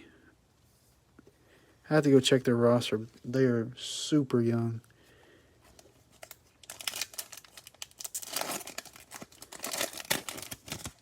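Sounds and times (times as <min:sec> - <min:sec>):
wrapper being torn and crinkled: 0:06.1 - 0:11.0.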